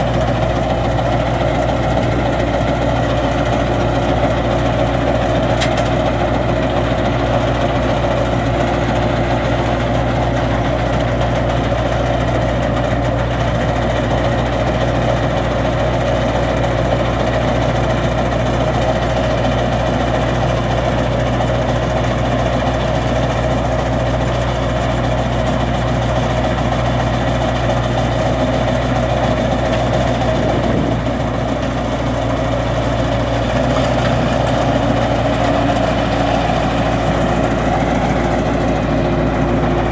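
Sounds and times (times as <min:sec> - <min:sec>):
loader engine running: 0:00.0 - 0:39.9.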